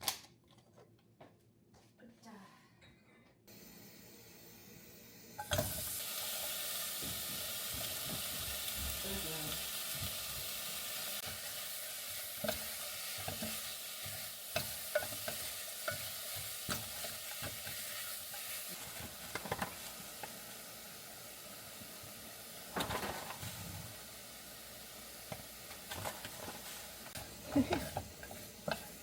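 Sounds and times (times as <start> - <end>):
food sizzling in oiled pan: 3.5 - 29.0
utensil scraping pan: 11.2 - 20.3, 25.8 - 29.0.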